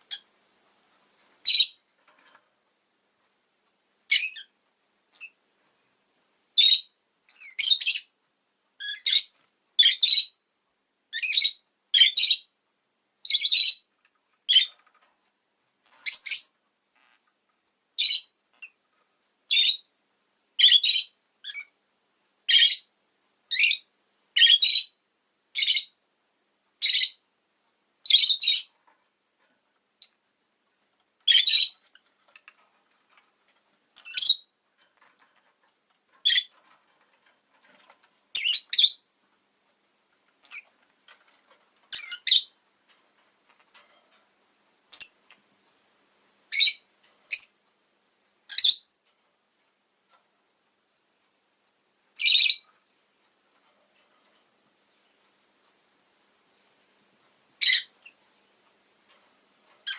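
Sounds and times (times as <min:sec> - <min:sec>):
lovebird chirping: 0:00.0 - 0:00.3, 0:01.4 - 0:01.9, 0:04.1 - 0:05.4, 0:06.6 - 0:08.1, 0:08.8 - 0:10.4, 0:11.1 - 0:12.6, 0:13.2 - 0:13.9, 0:14.5 - 0:14.8, 0:15.9 - 0:17.2, 0:18.0 - 0:18.8, 0:19.5 - 0:19.9, 0:20.6 - 0:21.8, 0:22.5 - 0:22.9, 0:23.5 - 0:26.0, 0:26.8 - 0:27.3, 0:28.0 - 0:28.8, 0:30.0 - 0:30.2, 0:31.2 - 0:32.0, 0:34.0 - 0:34.6, 0:36.2 - 0:36.5, 0:38.3 - 0:39.1, 0:40.4 - 0:40.7, 0:41.9 - 0:42.6, 0:44.9 - 0:45.2, 0:46.5 - 0:47.6, 0:48.5 - 0:48.9, 0:52.2 - 0:52.7, 0:57.6 - 0:58.5.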